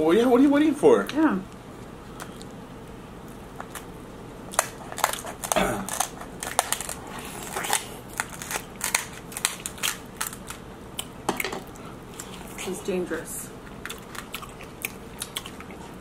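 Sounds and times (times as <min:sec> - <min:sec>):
crab shells cracking: 0:03.3 - 0:03.9, 0:04.5 - 0:12.3, 0:13.7 - 0:15.8.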